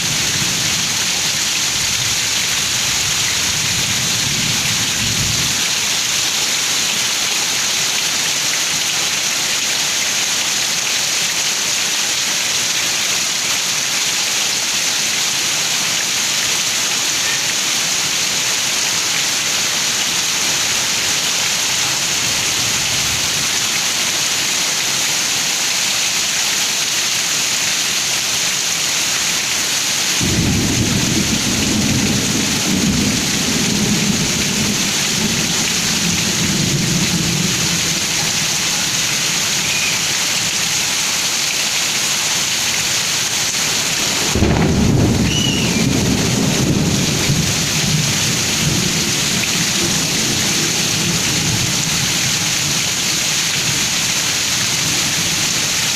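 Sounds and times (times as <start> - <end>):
heavy rain hissing: 0.0 - 55.9
deep rumble of thunder: 30.2 - 37.4, 44.2 - 50.5.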